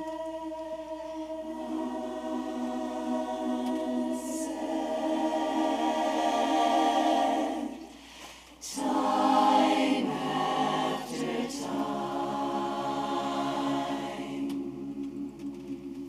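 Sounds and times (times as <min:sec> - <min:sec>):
women's chorus singing in harmony: 0:00.0 - 0:16.0.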